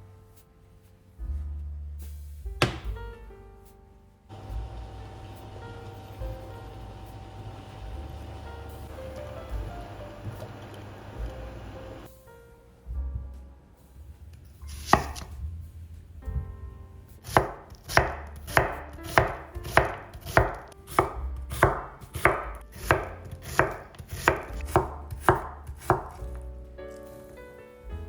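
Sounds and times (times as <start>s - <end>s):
knife chopping on cutting board: 2.6s - 3.0s, 14.9s - 15.3s, 17.3s - 26.3s.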